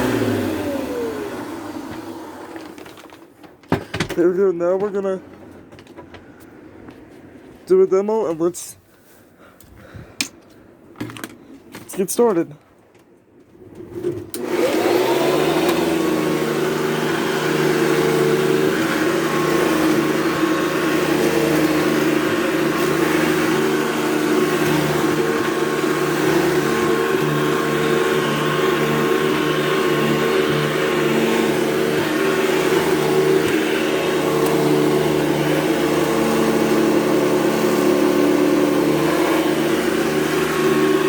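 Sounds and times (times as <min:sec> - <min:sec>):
vacuum cleaner motor humming: 0:00.0 - 0:03.2, 0:14.3 - 0:41.0.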